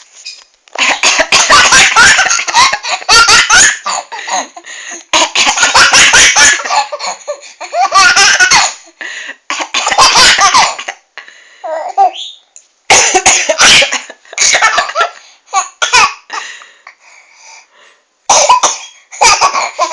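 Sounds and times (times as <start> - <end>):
woman coughing: 0.8 - 4.6, 9.5 - 11.0, 12.9 - 16.3, 18.3 - 19.9
baby laughing loudly: 0.8 - 8.8, 9.6 - 10.8, 12.9 - 16.3, 18.3 - 19.9.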